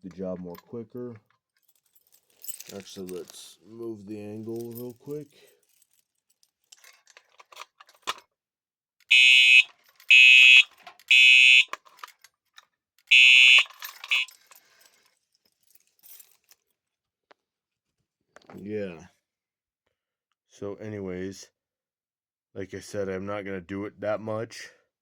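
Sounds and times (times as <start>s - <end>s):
alarm chirp: 9.1s - 11.7s, 13.1s - 14.3s
fire alarm horn blasts: 9.1s - 11.8s, 13.1s - 14.3s.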